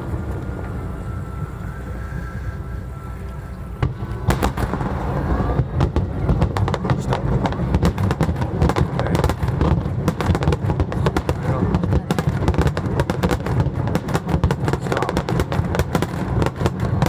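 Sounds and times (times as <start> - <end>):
fireworks bangs and crackles: 3.8 - 17.0.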